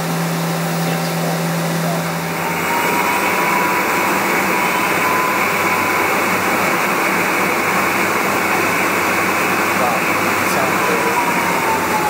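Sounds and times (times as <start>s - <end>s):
faint machine whine: 0.0s - 12.0s
machine chuck spinning rushing noise: 0.0s - 12.0s.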